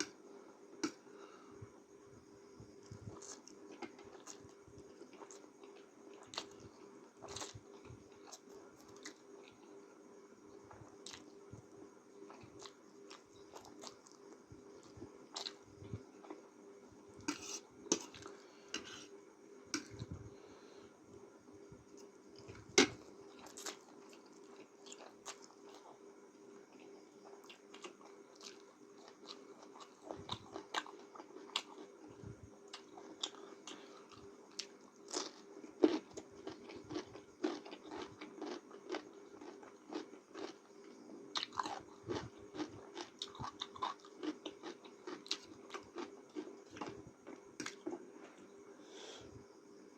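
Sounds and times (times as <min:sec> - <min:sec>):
faint steady hum: 0:00.0 - 0:49.9
person chewing noodles: 0:02.8 - 0:09.6, 0:12.2 - 0:16.4, 0:17.3 - 0:19.2, 0:21.9 - 0:26.0, 0:26.7 - 0:48.1.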